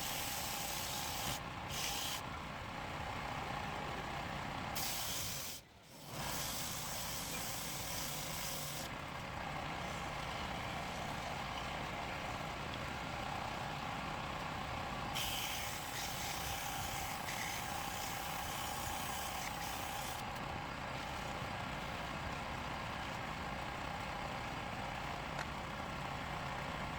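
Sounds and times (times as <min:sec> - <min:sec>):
turning tool cutting wood: 0:05.9 - 0:08.9, 0:15.2 - 0:20.3
wood lathe humming: 0:15.2 - 0:20.4.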